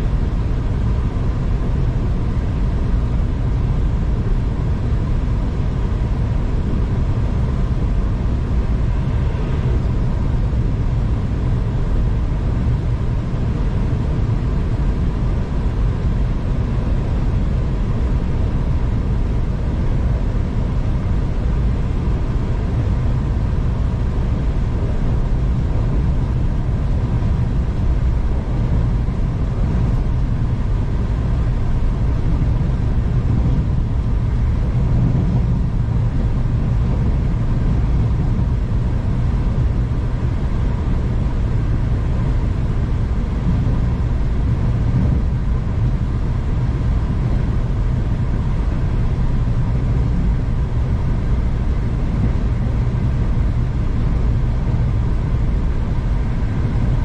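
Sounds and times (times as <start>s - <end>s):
faint constant whine: 0.0s - 57.0s.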